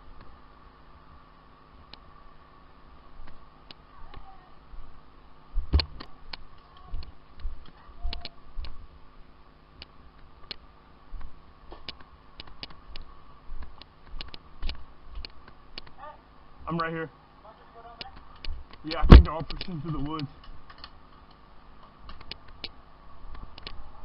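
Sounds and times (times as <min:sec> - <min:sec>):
sharp clicks and knocks: 0:05.7 - 0:08.8.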